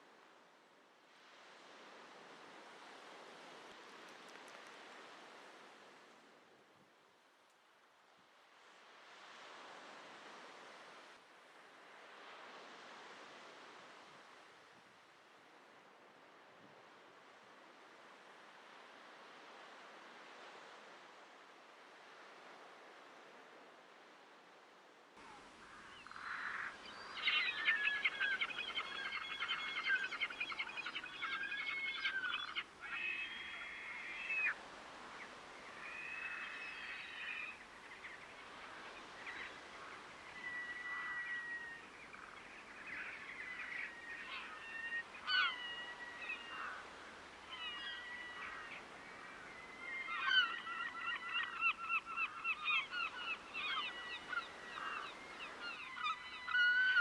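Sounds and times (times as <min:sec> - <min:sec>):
waterbirds honking: 0:50.1 - 0:57.0.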